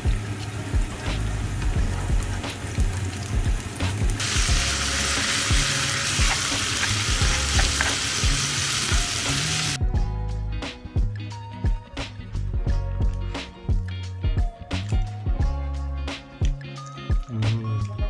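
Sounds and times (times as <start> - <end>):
water spraying: 0.0 - 9.8
background music: 0.0 - 18.0.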